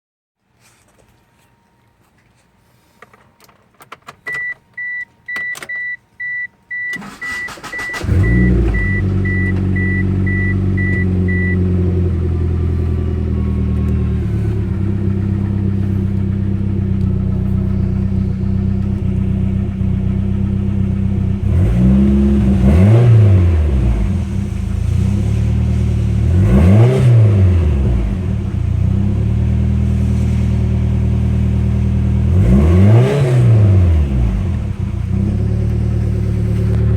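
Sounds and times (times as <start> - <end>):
car warning chime beeping: 4.2 - 19.1
car engine cranking and starting: 6.7 - 36.9
engine ticking: 6.9 - 30.0, 34.2 - 36.9
car engine idling and revving: 7.0 - 36.9.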